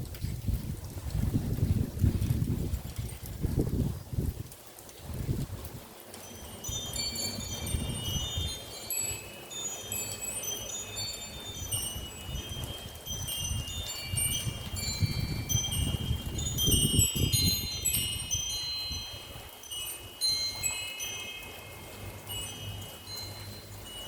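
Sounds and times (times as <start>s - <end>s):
wind rumble on microphone: 0.0s - 24.0s
wind chime tinkling: 6.1s - 24.0s.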